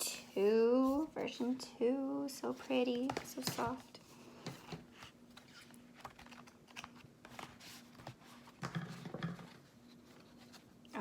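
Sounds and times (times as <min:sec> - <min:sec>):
paper pages rustling and tapping: 0:02.9 - 0:11.0.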